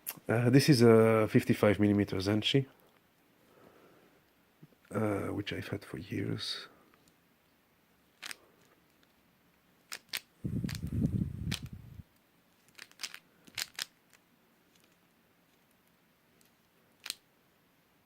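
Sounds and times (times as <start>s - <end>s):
puzzle cube clicking: 8.1s - 8.4s, 9.9s - 12.0s, 12.6s - 15.8s, 16.4s - 17.2s
low dull rumble: 10.4s - 12.0s.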